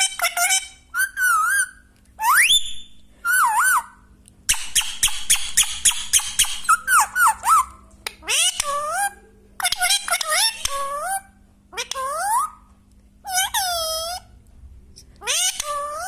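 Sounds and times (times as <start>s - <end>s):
parrot whistling: 0.9s - 9.1s
parrot clicking chatter: 4.5s - 11.2s.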